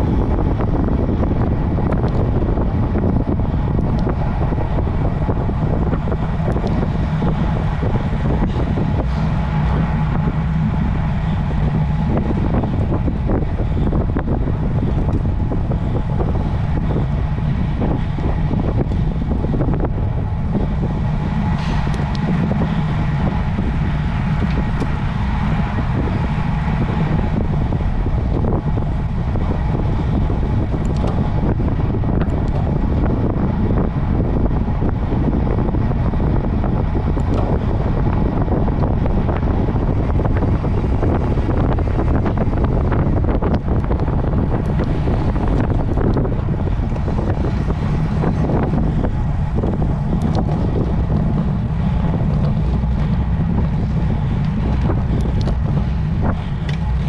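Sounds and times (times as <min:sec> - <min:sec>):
low rumble: 0:00.0 - 0:57.0
wind rush on microphone: 0:00.0 - 0:57.0.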